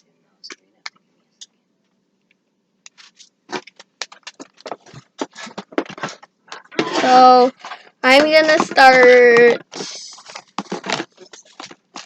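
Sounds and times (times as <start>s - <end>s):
plastic packaging crackling: 2.9s - 12.0s.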